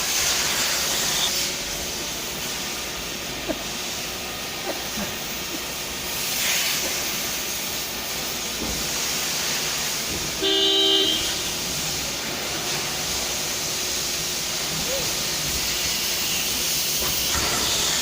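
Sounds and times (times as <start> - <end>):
steam jet hissing: 0.0 - 18.0
short horn toot: 10.4 - 11.6.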